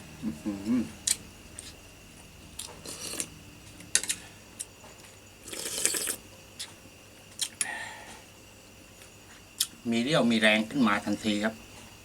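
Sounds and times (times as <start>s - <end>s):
noisy slurp: 2.6s - 3.3s, 5.4s - 6.2s
person eating noisily: 2.6s - 3.3s, 5.4s - 6.2s.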